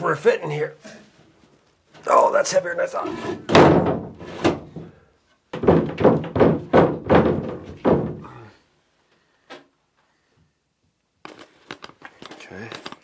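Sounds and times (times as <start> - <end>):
heavy thunks: 3.2 - 8.5.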